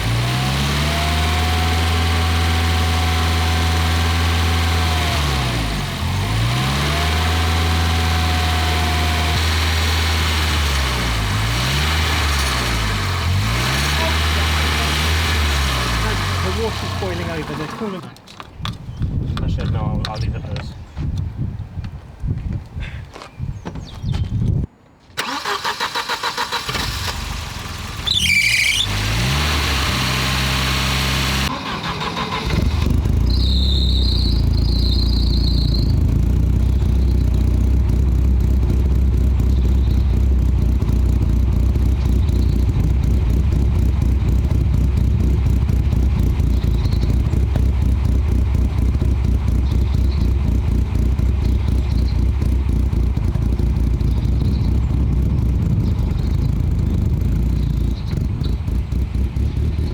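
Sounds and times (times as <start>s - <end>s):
car engine idling: 0.0s - 18.2s, 25.2s - 59.9s
car engine cranking: 0.0s - 18.8s, 25.2s - 59.9s
high engine squeal: 27.8s - 29.8s, 31.5s - 37.4s.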